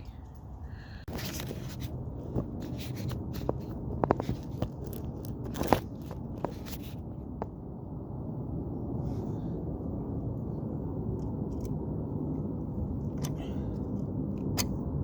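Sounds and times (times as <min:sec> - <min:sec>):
low background rumble: 0:00.0 - 0:15.0
hands clicking and scraping wires: 0:01.1 - 0:07.5.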